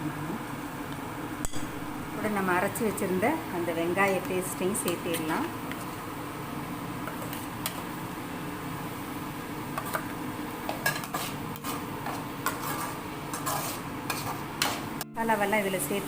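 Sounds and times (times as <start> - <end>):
metal spoon scraping in pan: 7.0 - 7.8, 9.8 - 15.0.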